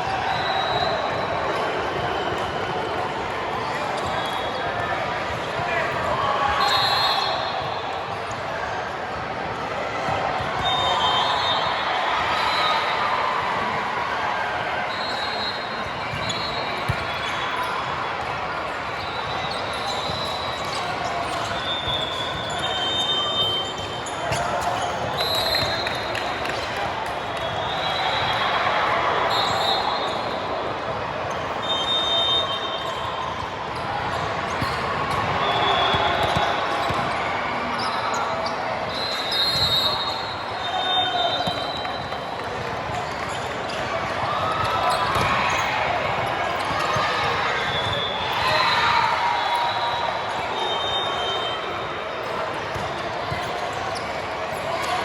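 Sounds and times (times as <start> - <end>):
crowd and play noise in hall: 0.0 - 55.0
hubbub of voices: 0.0 - 55.0
sneakers squeaking on floor: 14.9 - 30.4, 31.3 - 55.0.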